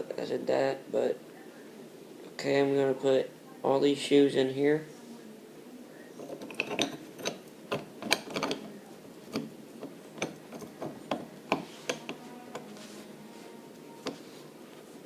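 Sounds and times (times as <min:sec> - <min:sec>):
metal clutch parts clicking: 0:06.2 - 0:08.7.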